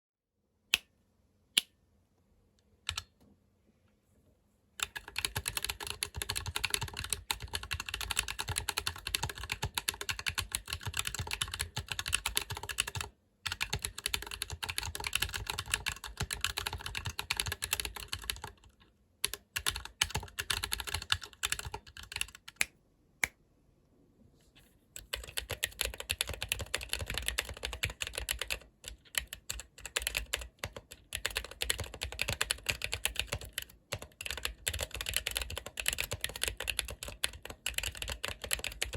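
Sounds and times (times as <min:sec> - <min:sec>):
mechanical keyboard typing: 0:02.9 - 0:03.1, 0:04.8 - 0:22.6, 0:25.0 - 0:38.9.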